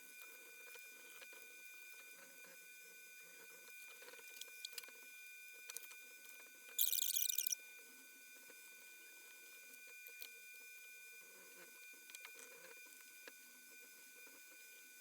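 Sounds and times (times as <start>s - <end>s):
faint electrical whine: 5.8s - 7.6s.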